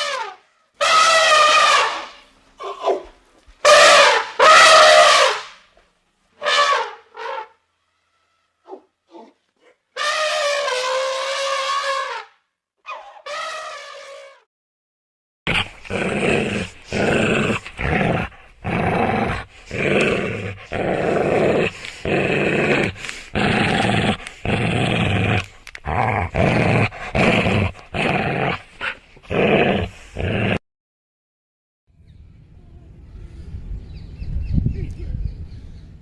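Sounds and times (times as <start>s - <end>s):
dog growling and barking: 15.5s - 30.6s.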